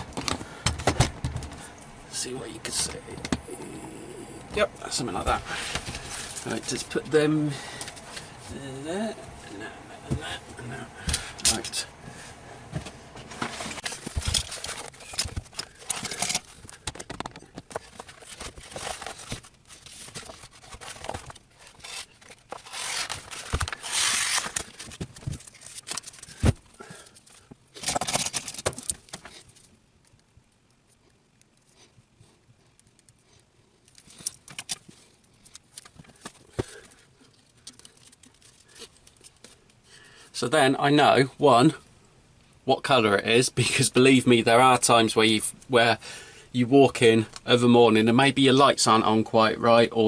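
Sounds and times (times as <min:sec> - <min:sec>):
packaging rustling and tearing: 0:05.4 - 0:06.9, 0:13.5 - 0:29.7, 0:33.9 - 0:39.6.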